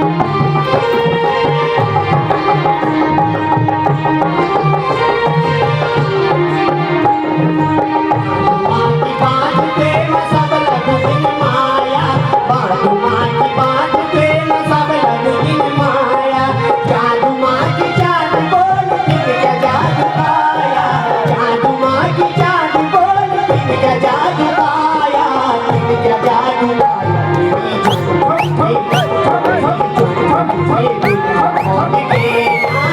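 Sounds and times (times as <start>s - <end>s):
hand drum rhythm: 27.8s - 30.0s, 31.0s - 32.9s.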